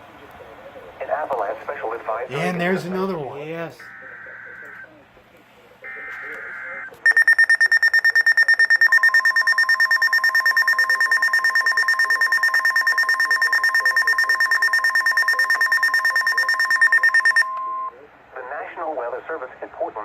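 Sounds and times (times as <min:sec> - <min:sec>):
rapidly pulsing high beep: 0:07.1 - 0:17.4
steady warning alarm tone: 0:07.1 - 0:17.4.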